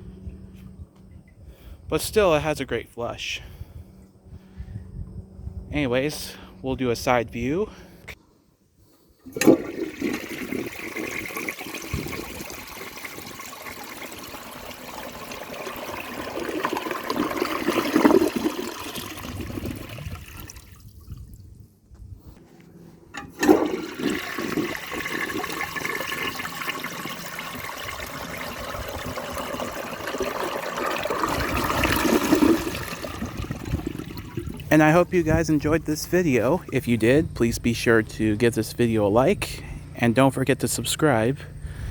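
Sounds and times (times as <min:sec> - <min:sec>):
toilet flushing: 0:09.3 - 0:20.8, 0:23.2 - 0:36.9.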